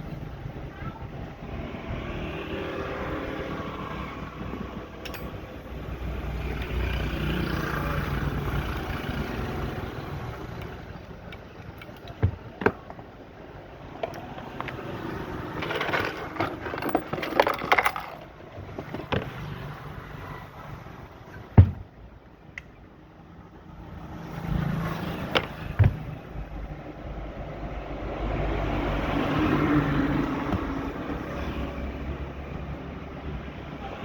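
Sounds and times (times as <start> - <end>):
metal knocks and clinks: 5.0 - 5.7, 14.0 - 19.4.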